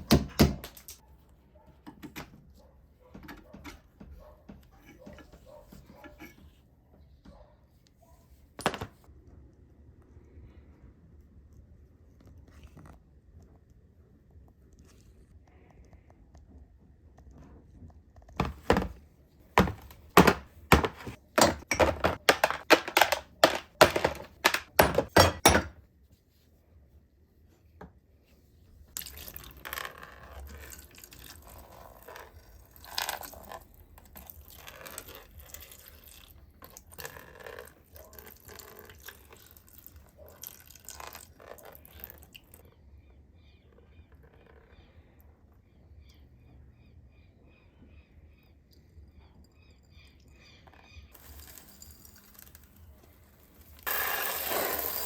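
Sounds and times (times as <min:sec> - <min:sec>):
scraping and rubbing: 0:19.6 - 0:25.5.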